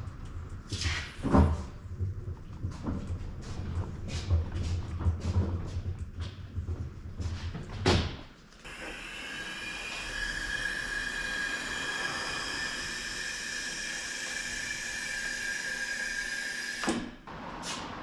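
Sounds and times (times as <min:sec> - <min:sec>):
high-pitched machine whine: 0:08.7 - 0:16.9.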